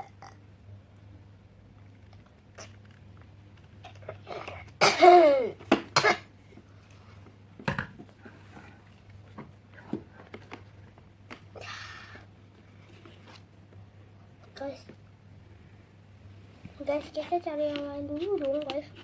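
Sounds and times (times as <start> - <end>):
person coughing: 4.8 - 6.3.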